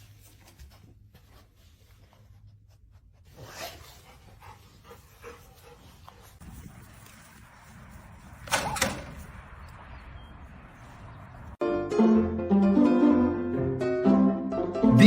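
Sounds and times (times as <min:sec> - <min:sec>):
dog panting: 0:03.7 - 0:06.4.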